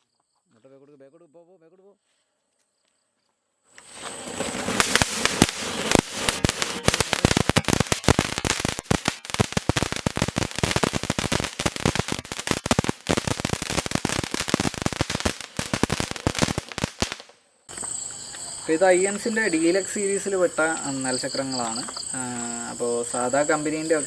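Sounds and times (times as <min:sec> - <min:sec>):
firecracker string crackling: 0:03.8 - 0:18.1.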